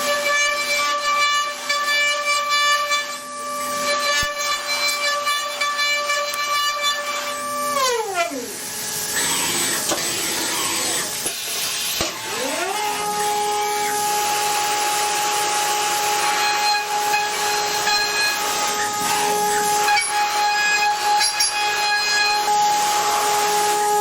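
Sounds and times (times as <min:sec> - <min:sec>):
machine spindle whining: 0:06.2 - 0:24.0.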